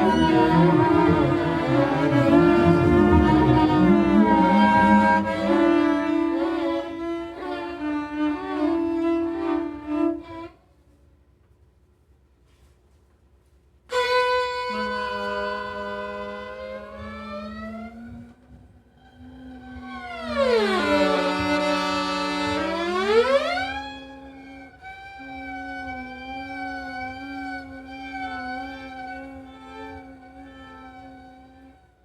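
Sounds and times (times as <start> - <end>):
bowed strings sustained notes: 0.0 - 10.4, 19.0 - 32.0.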